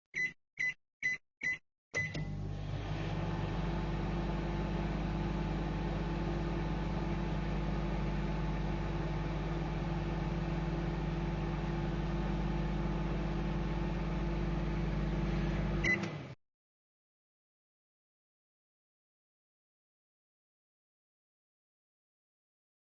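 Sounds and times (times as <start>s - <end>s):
microwave beeps: 0.2s - 2.5s, 15.8s - 16.2s
microwave humming: 2.0s - 16.4s.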